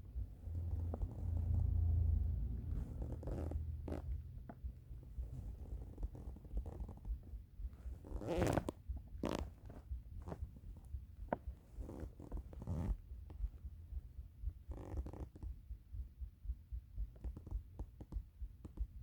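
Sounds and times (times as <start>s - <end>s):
stomach rumbling: 2.6s - 13.0s.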